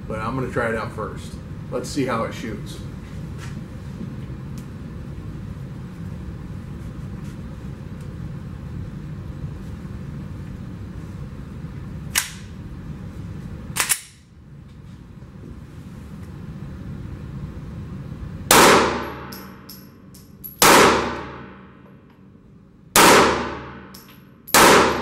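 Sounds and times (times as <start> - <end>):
steady low hum: 0.0 - 25.0
pistol shots: 18.5 - 19.5, 20.6 - 21.6, 23.0 - 25.0.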